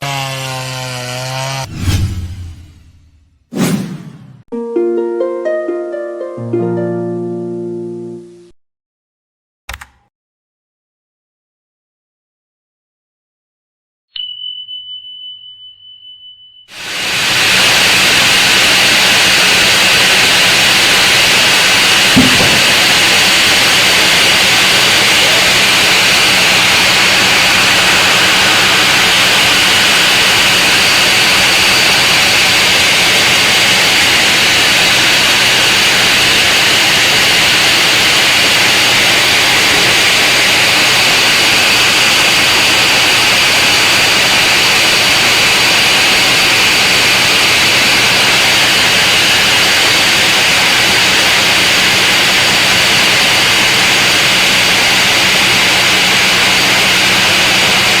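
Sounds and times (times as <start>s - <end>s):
sawmill saw cutting log: 0.0s - 3.0s, 16.7s - 58.0s
motor hum: 19.7s - 30.5s.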